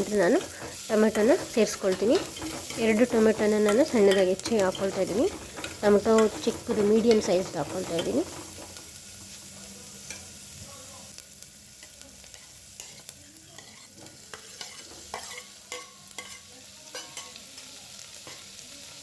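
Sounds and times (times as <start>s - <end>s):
spatula scraping pan: 0.0s - 9.0s, 12.3s - 17.4s
tomatoes sizzling in oil: 0.0s - 19.0s.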